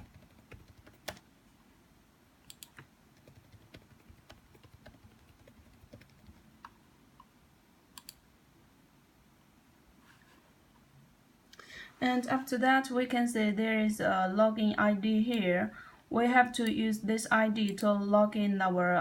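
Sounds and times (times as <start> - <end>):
mouse clicks: 2.5 - 2.9, 8.0 - 8.2.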